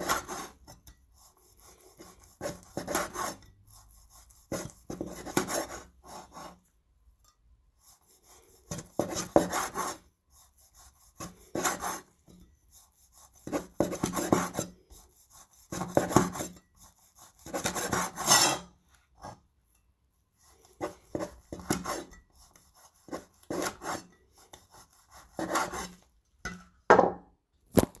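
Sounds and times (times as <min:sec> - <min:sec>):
knife sawing through meat: 0:12.8 - 0:18.7, 0:20.6 - 0:26.0
knife knocking on chopping board: 0:26.9 - 0:27.2.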